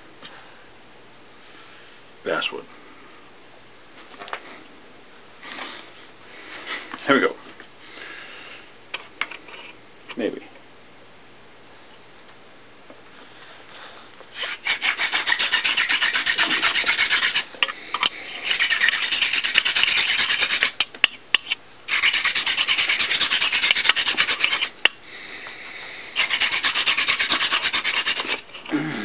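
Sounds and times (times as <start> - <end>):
wooden spindle rasping on hearth board: 14.4 - 17.5, 18.4 - 20.7, 21.9 - 24.7, 26.2 - 28.5.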